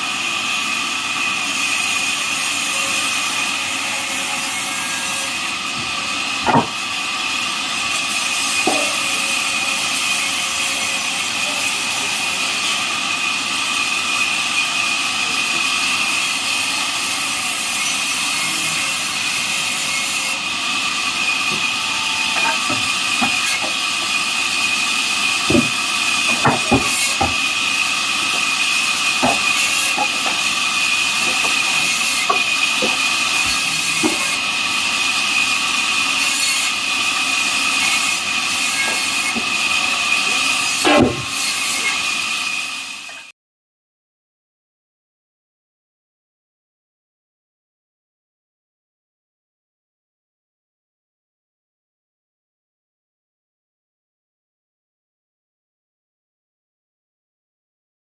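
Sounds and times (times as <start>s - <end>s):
band saw blade cutting wood: 1.2s - 12.8s, 13.6s - 43.2s
sharp knocks: 6.4s - 6.8s, 25.5s - 27.4s, 29.2s - 30.4s.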